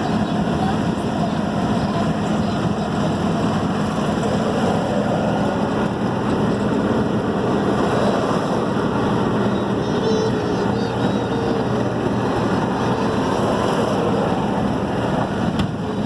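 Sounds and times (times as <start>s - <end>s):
road noise: 0.0s - 16.0s
vehicle engine: 0.0s - 16.0s.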